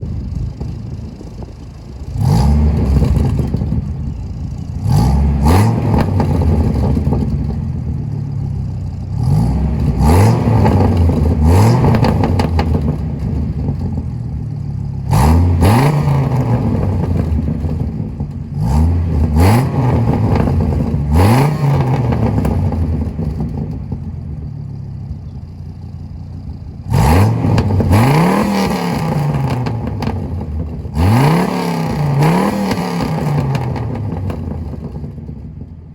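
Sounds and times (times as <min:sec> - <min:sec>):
truck engine revving: 0:00.0 - 0:24.4, 0:26.4 - 0:35.7
engine rumbling idle: 0:00.0 - 0:31.2, 0:33.0 - 0:35.9
exhaust crackles: 0:00.0 - 0:35.9.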